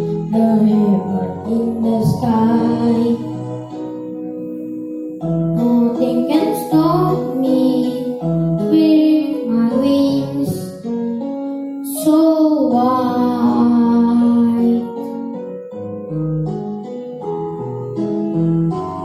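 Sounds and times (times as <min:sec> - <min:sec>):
person singing wordless notes: 0:00.0 - 0:10.9, 0:11.8 - 0:15.5
piano-led backing track: 0:00.0 - 0:19.0.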